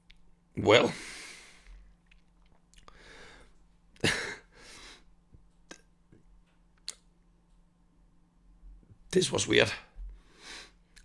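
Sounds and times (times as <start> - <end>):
man coughing: 4.0 - 4.7.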